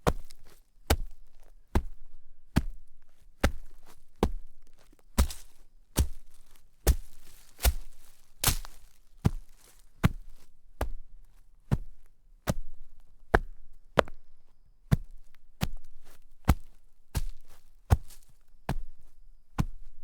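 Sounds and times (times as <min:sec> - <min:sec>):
footsteps crunching in snow: 0:03.4 - 0:10.5, 0:16.6 - 0:18.4.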